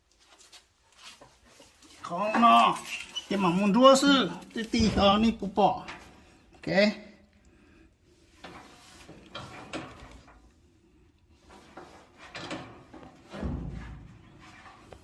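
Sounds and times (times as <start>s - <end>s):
scrapes and knocks inside dryer: 11.6s - 15.0s.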